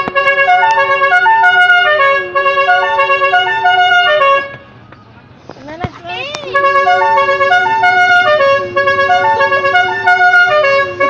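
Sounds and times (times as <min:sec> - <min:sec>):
musical air horn playing tune: 0:00.0 - 0:04.7, 0:06.4 - 0:11.0.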